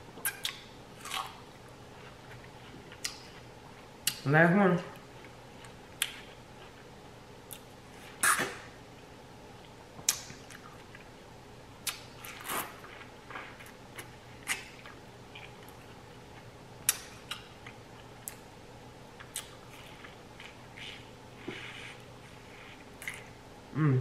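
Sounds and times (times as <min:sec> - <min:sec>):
chewing fruit: 0:00.1 - 0:04.3, 0:04.9 - 0:06.9, 0:07.5 - 0:08.6, 0:11.8 - 0:18.5, 0:19.2 - 0:23.4
sharp mouth clicks: 0:00.2 - 0:01.3
wet mouth smacks: 0:00.2 - 0:01.4, 0:10.0 - 0:10.7, 0:11.8 - 0:12.7.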